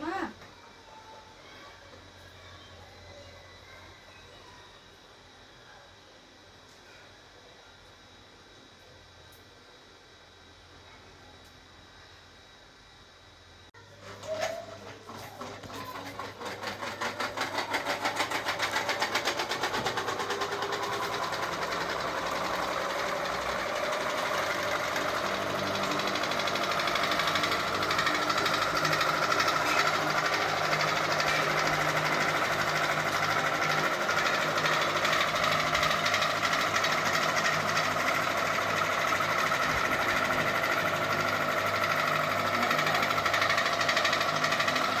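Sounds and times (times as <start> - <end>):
ceiling fan humming: 0.0 - 45.0
fast rhythmic fan rattle: 13.8 - 45.0.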